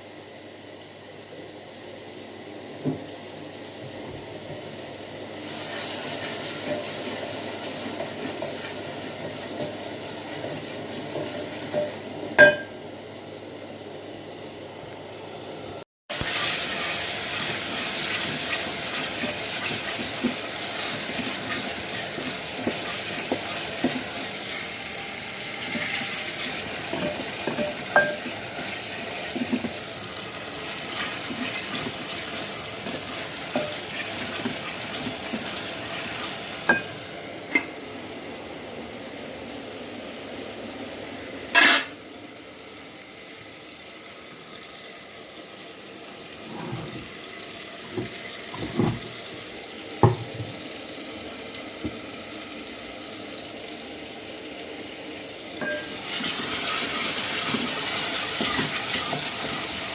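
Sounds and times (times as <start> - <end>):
dishes and utensils clinking: 11.2 - 12.8, 26.9 - 28.4, 33.5 - 33.8, 41.6 - 42.0, 55.6 - 56.0.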